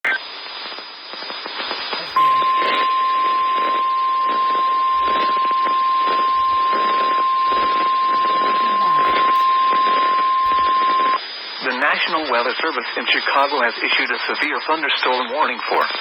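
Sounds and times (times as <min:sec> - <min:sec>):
radio static hissing: 0:00.1 - 0:16.0
steady high alarm tone: 0:02.0 - 0:11.2.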